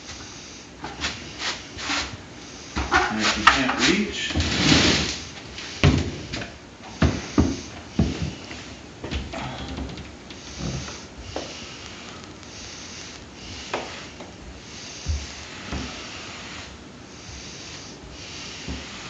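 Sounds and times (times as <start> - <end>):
grout float scraping tile: 15.4 - 16.7.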